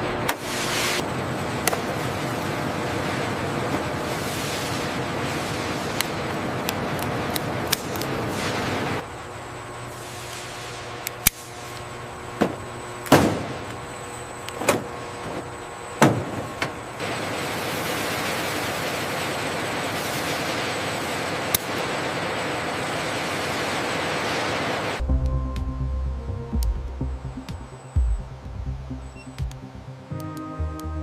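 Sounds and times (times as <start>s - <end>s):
steady rushing noise: 16.2s - 30.1s.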